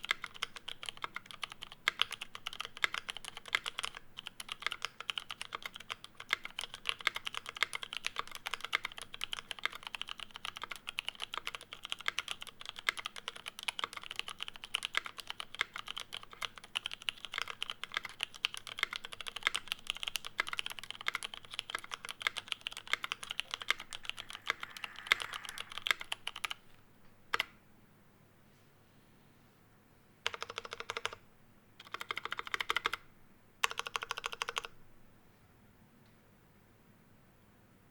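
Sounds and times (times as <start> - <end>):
typing on mechanical keyboard: 0.0 - 26.6, 30.2 - 31.2, 31.8 - 33.0, 33.6 - 34.7.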